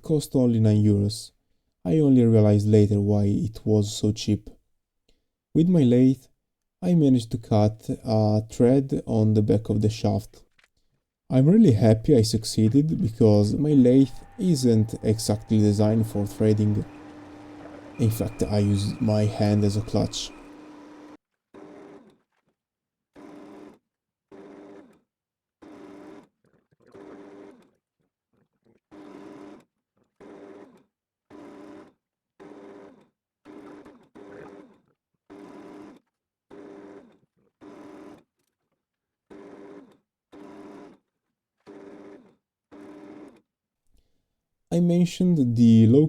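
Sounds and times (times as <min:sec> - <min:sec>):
metal lathe motor whining: 0:12.7 - 0:21.2.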